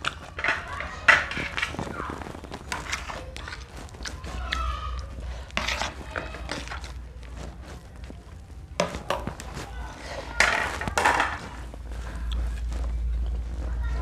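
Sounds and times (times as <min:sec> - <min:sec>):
crunchy chewing: 0:00.0 - 0:14.0
steady low hum: 0:00.0 - 0:14.0.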